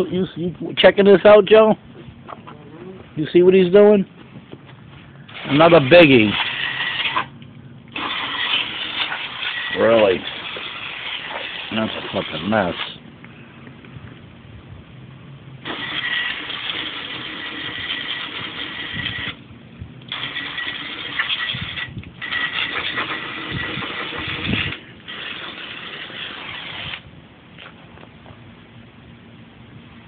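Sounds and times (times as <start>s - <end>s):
low steady hum: 0.0s - 30.0s
water hissing from hose nozzle: 5.3s - 7.3s, 8.0s - 13.0s, 15.6s - 19.4s, 20.1s - 27.0s.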